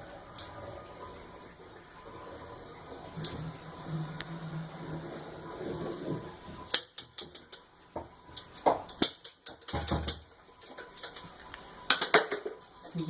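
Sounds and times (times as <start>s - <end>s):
hard objects clicking and knocking: 6.6s - 11.2s, 11.9s - 12.6s.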